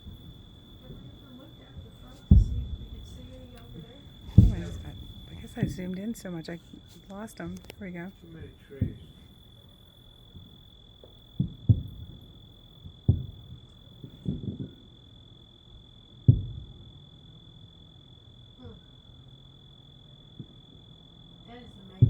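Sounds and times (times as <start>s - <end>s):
distant fireworks booming: 0.0s - 15.1s, 16.2s - 17.2s, 20.3s - 20.9s, 21.5s - 22.0s
night insects chorus: 0.0s - 22.0s.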